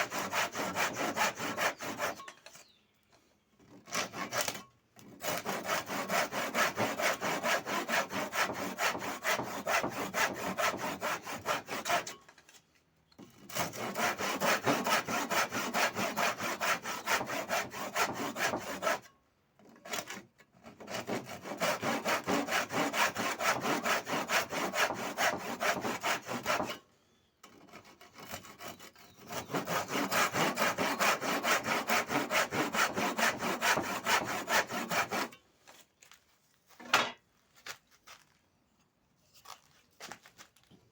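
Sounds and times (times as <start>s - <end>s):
wood being sawn by hand: 0.0s - 2.3s, 3.7s - 12.1s, 13.5s - 19.0s, 19.9s - 26.8s, 27.5s - 35.3s.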